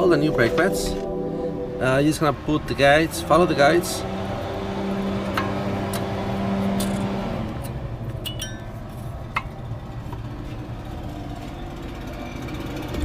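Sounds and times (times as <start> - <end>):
metallic clinks of brake hardware: 8.2 - 8.7.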